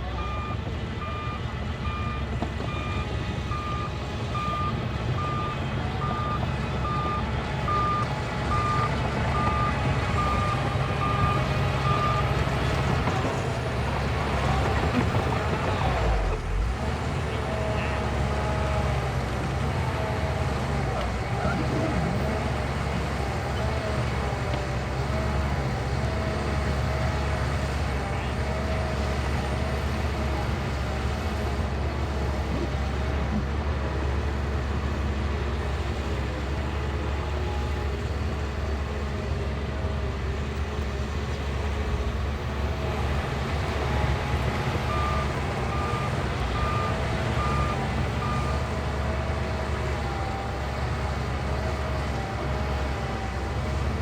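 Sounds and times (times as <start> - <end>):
bulldozer diesel engine running: 0.0 - 54.0
reversing alarm beeps: 0.2 - 12.4, 44.2 - 48.8.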